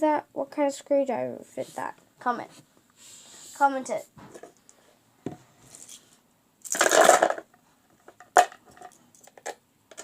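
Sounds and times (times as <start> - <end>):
small hard items rattling: 6.6 - 10.0.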